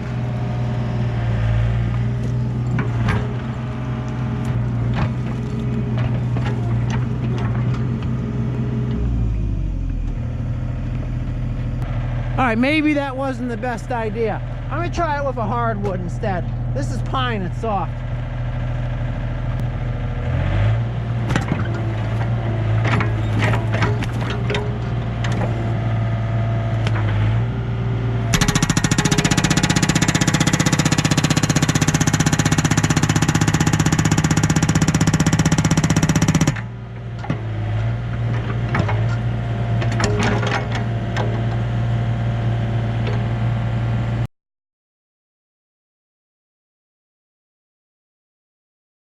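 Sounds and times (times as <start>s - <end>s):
diesel engine running: 0.0s - 44.2s
excavator arm knocks and clunks: 2.2s - 3.7s, 4.4s - 9.0s, 21.2s - 26.1s, 26.7s - 27.4s, 36.5s - 41.7s
hydraulic breaker hammer rattling: 21.3s - 25.8s, 28.3s - 37.5s.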